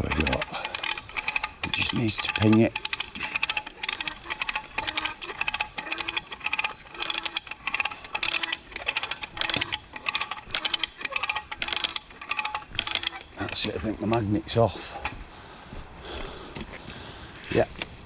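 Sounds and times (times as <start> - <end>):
metallic clicking and rattling: 0.0 - 14.3.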